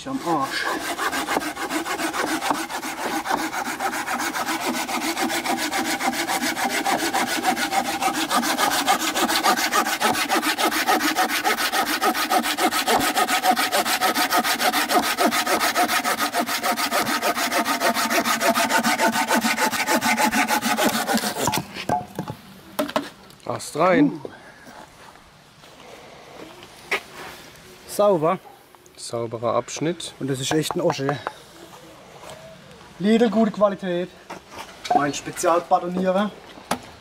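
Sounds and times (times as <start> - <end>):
hand saw cutting log: 0.0 - 21.8.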